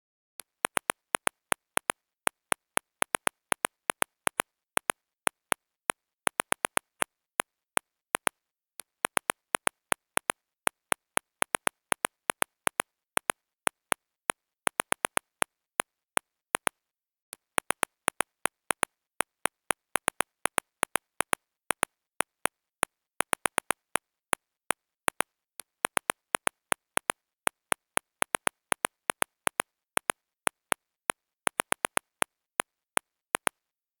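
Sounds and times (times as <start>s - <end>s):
phone keyboard key clicks: 0.7s - 5.5s, 9.1s - 13.9s, 23.2s - 23.9s, 25.9s - 30.8s, 31.5s - 32.2s.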